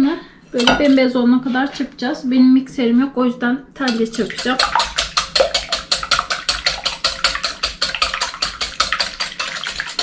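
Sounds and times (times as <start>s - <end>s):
wire whisk beating in a bowl: 3.9s - 10.0s.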